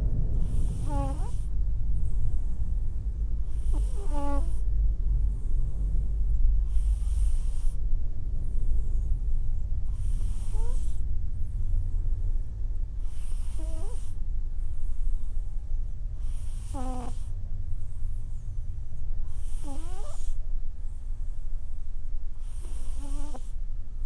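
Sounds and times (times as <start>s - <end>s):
cat snoring: 0.4s - 1.5s, 3.4s - 4.7s, 6.6s - 9.1s, 9.9s - 11.0s, 13.0s - 14.2s, 16.2s - 18.4s, 19.2s - 20.4s, 22.4s - 23.6s.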